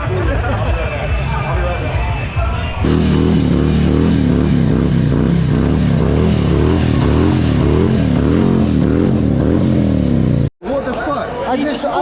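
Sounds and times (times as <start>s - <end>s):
motorcycle engine revving: 2.8s - 10.5s.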